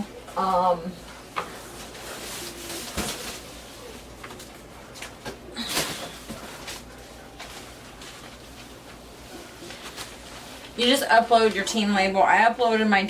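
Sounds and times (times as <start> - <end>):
packaging rustling: 1.6 - 11.6.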